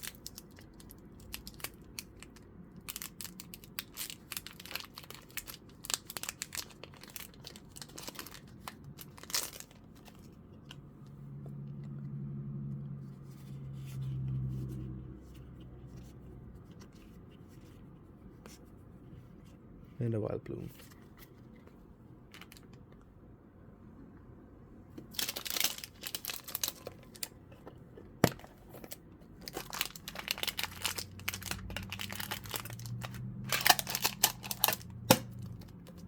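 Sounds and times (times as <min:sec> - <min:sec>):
low steady hum: 0:00.0 - 0:36.0
foil pack tearing and crinkling: 0:02.8 - 0:09.8, 0:25.1 - 0:27.3, 0:28.3 - 0:35.7.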